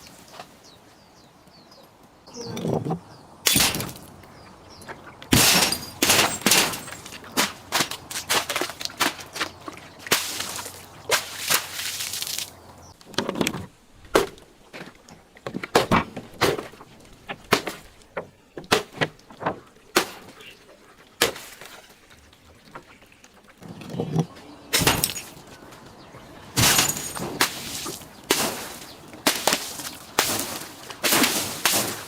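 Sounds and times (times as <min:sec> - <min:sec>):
objects crushed cracking and popping: 0:03.5 - 0:04.2, 0:05.3 - 0:12.5, 0:24.8 - 0:25.5, 0:26.6 - 0:32.0.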